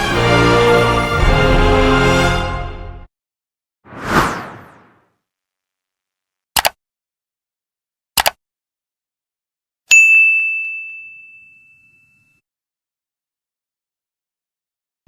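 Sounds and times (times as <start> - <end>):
double clicks: 6.6 - 6.8, 8.2 - 8.4
high bell-like ding: 9.9 - 12.4.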